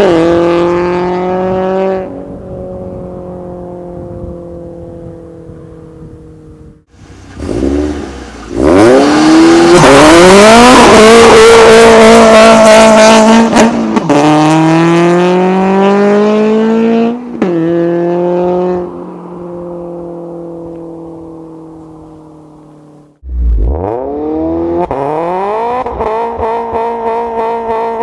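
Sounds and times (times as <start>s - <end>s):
car engine revving: 7.0s - 28.0s.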